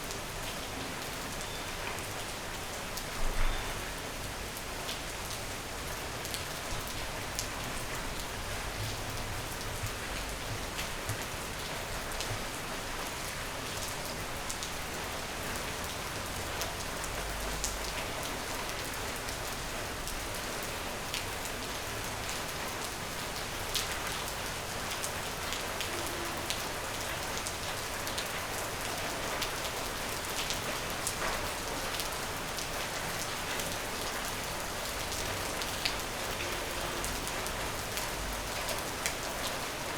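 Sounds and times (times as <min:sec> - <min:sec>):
rain on a hard surface: 0:00.0 - 0:39.9.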